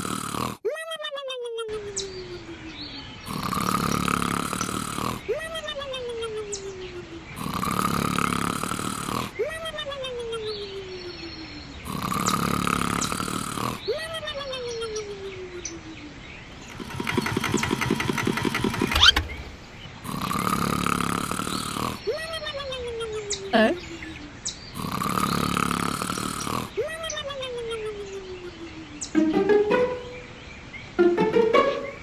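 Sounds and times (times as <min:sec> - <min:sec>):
cartoon snoring with whistle: 0:00.0 - 0:00.6, 0:03.2 - 0:05.4, 0:07.4 - 0:09.4, 0:11.8 - 0:13.9, 0:16.6 - 0:22.2, 0:24.8 - 0:26.8
fast rattle with rising whistle: 0:16.5 - 0:19.9.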